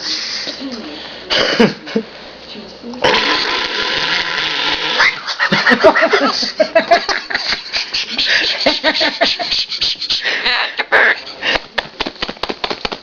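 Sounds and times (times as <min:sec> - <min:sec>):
laugh-like chuckling: 0:04.9 - 0:11.7.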